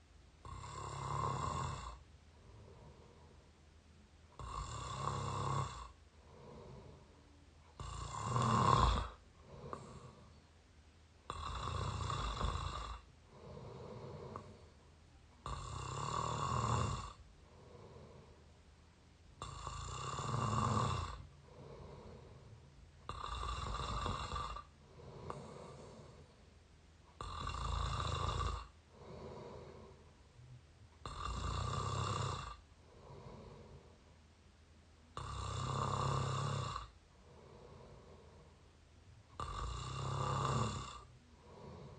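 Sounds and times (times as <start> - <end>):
soft breath sound: 0.0 - 41.9
person snoring loudly: 0.4 - 3.2, 4.4 - 7.0, 7.8 - 10.3, 11.3 - 14.7, 15.4 - 18.3, 19.4 - 26.3, 27.2 - 30.0, 31.0 - 33.9, 35.2 - 38.4, 39.4 - 41.9.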